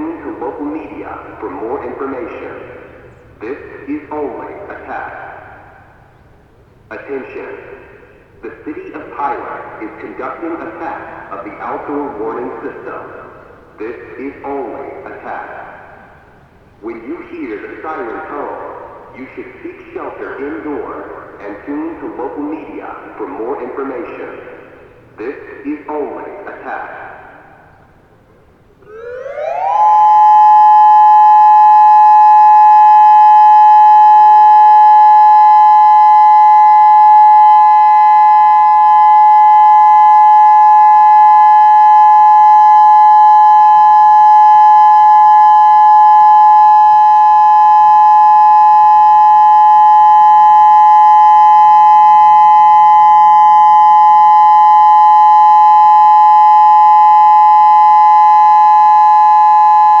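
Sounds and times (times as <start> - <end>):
outdoor warning siren steady tone: 28.7 - 60.0.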